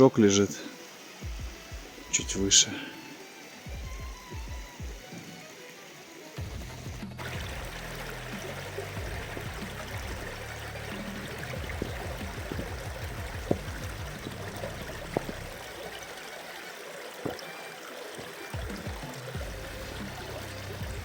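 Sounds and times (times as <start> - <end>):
river flowing water: 0.0 - 21.0.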